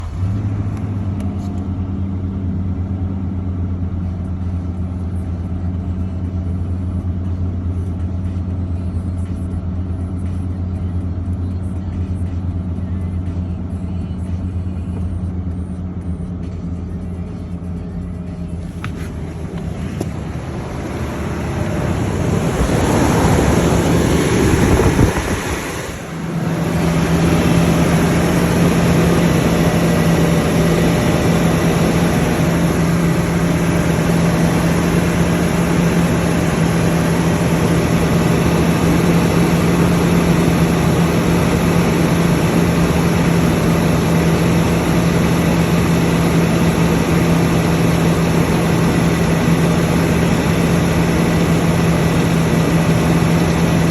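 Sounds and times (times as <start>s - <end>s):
car engine running: 0.0s - 53.9s.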